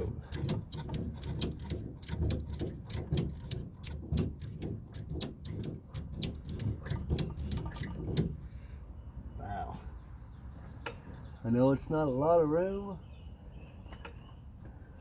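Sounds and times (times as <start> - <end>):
socket ratchet clicking: 0.0 - 8.4.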